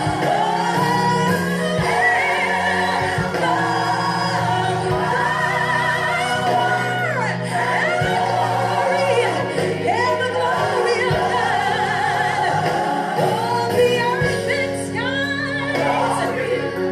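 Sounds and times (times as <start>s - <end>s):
gospel singing voices: 0.0s - 16.9s.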